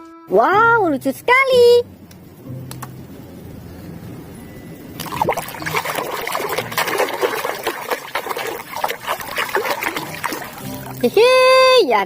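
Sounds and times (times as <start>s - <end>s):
water splashing and trickling: 4.8s - 12.0s.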